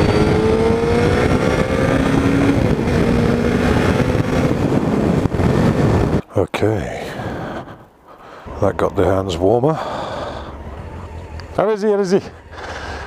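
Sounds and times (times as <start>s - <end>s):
wind on microphone: 0.0s - 6.3s.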